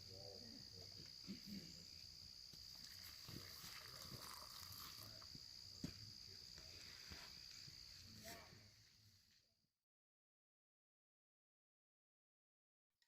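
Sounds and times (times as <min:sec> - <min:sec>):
insect trilling: 0:00.0 - 0:08.7.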